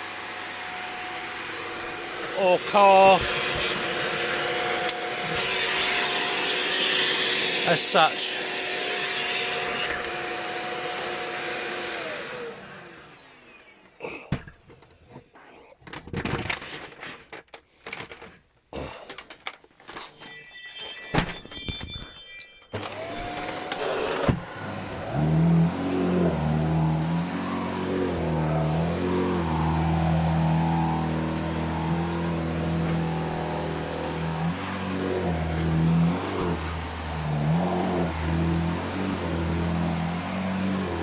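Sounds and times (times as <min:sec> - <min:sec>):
vacuum cleaner running: 0:00.0 - 0:13.9, 0:22.7 - 0:41.0.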